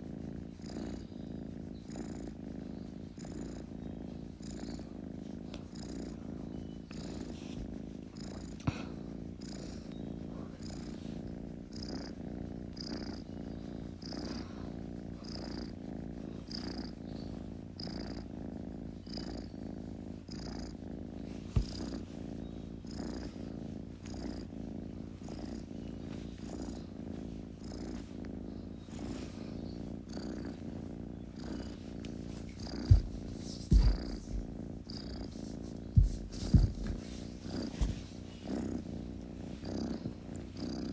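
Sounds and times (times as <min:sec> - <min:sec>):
kitten purring: 0:00.0 - 0:40.9
sharp low thumps: 0:32.9 - 0:34.6, 0:35.9 - 0:37.0.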